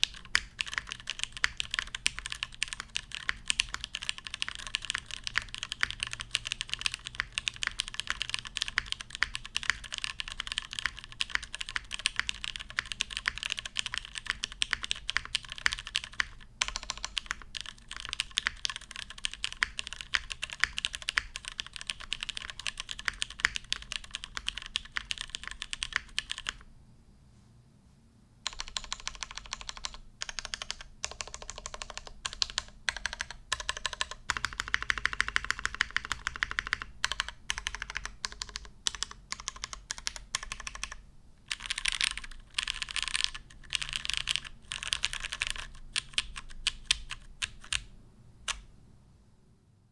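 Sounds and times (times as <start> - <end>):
mechanical keyboard typing: 0.0 - 26.7, 28.5 - 47.9, 48.5 - 48.7.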